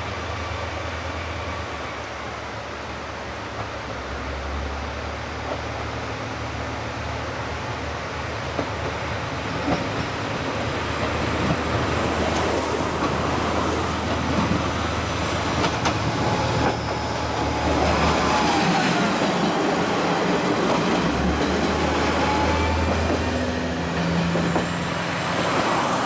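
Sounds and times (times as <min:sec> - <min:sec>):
diesel railcar engine drone: 0:00.0 - 0:26.0
wheels rushing on rail: 0:00.0 - 0:26.0
wheels clicking over rail joints: 0:15.5 - 0:16.9.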